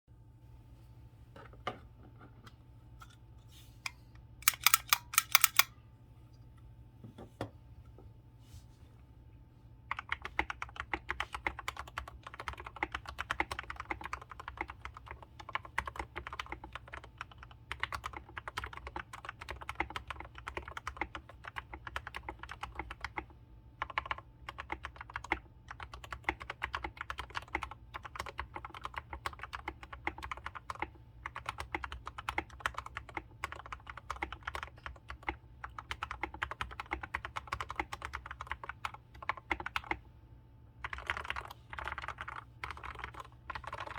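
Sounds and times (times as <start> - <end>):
mechanical keyboard typing: 4.4 - 5.7, 9.9 - 40.0, 40.8 - 43.9.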